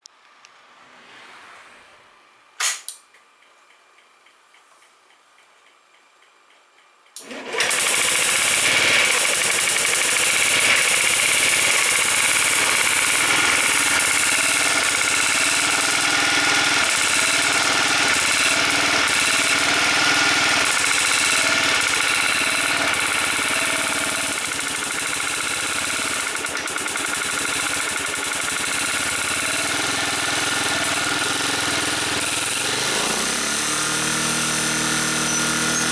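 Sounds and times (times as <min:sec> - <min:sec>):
scooter engine tappet clatter: 0:07.2 - 0:35.9.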